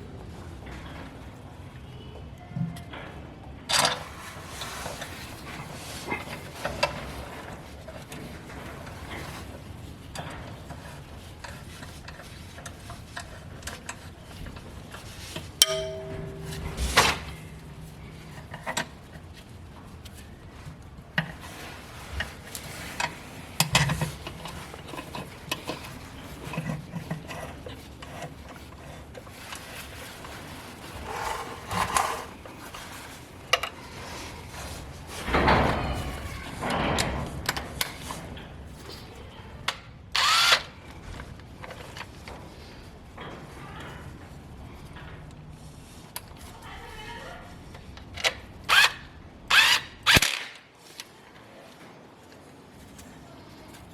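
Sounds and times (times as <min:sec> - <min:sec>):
hand tools and metal parts knocking: 0:10.1 - 0:19.4.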